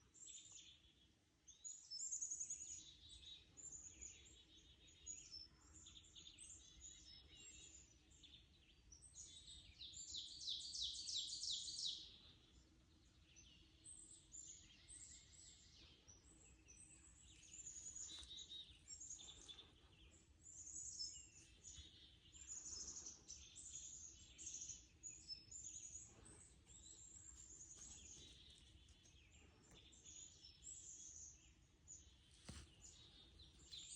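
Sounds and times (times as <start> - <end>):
songbirds singing and chirping: 0.0 - 33.9.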